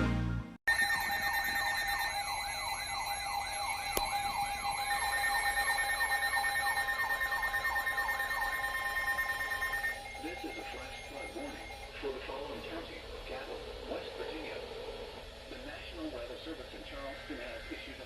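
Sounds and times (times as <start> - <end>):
steady held tones: 0.0 - 18.0
warbling siren alert tone: 0.7 - 12.1.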